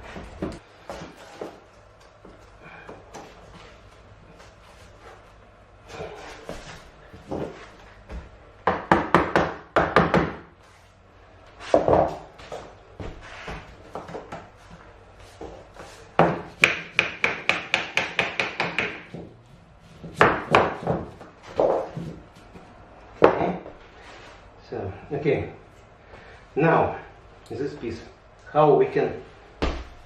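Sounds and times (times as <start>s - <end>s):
hammer tapping floor planks: 16.2s - 19.3s.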